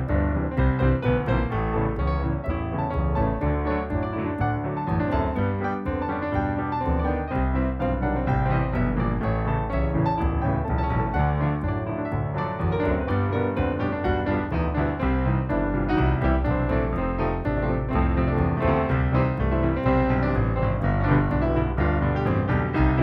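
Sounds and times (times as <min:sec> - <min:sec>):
piano-led instrumental music: 0:00.0 - 0:23.0.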